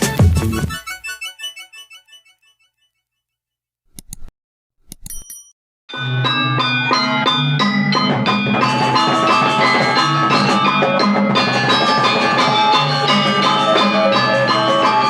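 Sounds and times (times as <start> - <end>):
drums: 0.0 - 0.9, 6.0 - 15.0
gamelan metallophones and gongs: 6.0 - 15.0.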